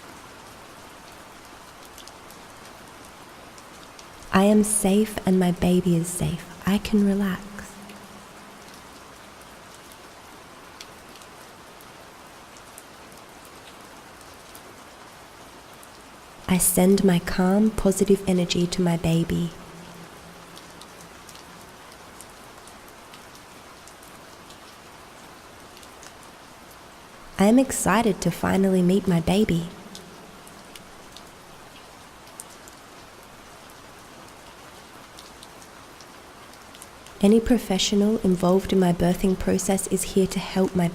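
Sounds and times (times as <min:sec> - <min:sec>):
gentle rain: 0:00.0 - 0:40.9
raindrop ticks: 0:17.0 - 0:24.8, 0:29.0 - 0:33.2.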